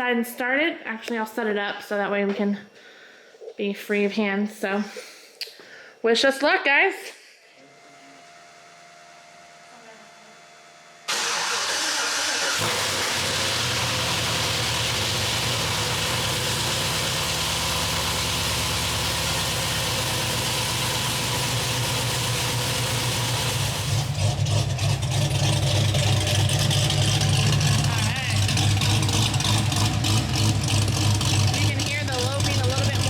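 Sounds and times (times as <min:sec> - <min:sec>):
car engine cranking: 0:11.1 - 0:33.0
car engine idling: 0:11.1 - 0:33.0.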